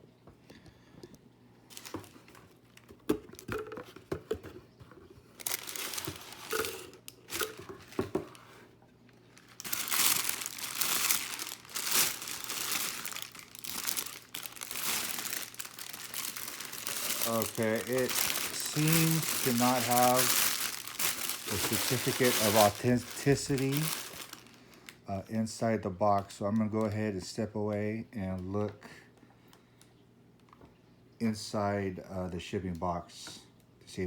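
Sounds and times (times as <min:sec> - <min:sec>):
packaging crinkling: 0:01.7 - 0:03.6, 0:05.3 - 0:08.6, 0:09.2 - 0:25.0.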